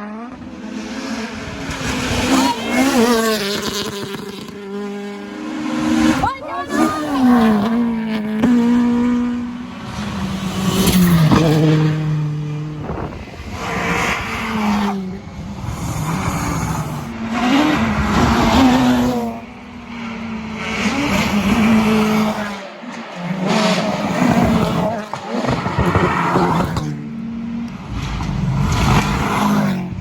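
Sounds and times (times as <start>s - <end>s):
rally car engine revving: 0.0s - 30.0s
tyres squealing and skidding: 5.9s - 7.8s.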